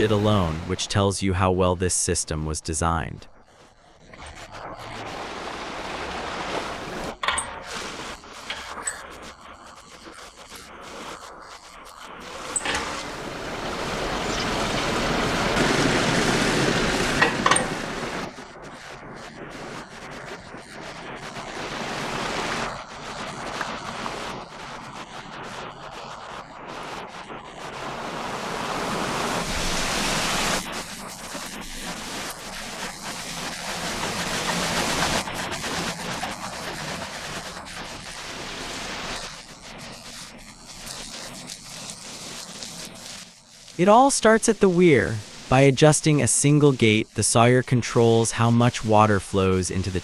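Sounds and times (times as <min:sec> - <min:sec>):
rushing water: 0:12.3 - 0:18.3, 0:27.8 - 0:39.5.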